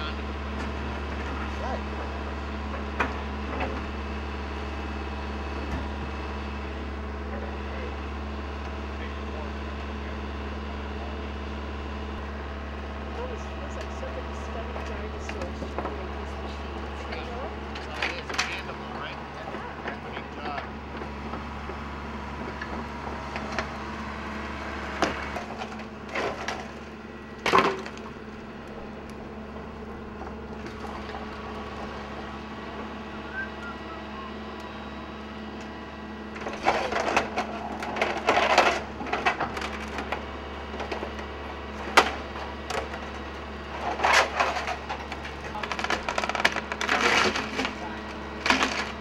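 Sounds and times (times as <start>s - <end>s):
excavator engine hum: 0.0s - 49.0s
timber cracking and splintering: 14.7s - 32.9s, 35.5s - 49.0s.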